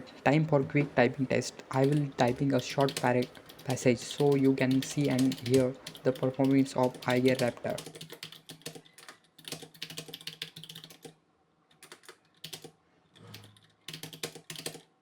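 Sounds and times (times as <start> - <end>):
mechanical keyboard typing: 1.7 - 11.1, 11.8 - 12.7, 13.3 - 14.9.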